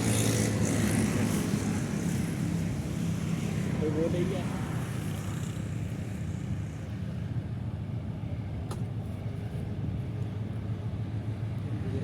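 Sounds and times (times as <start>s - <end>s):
diesel locomotive engine rumble: 6.0s - 12.0s.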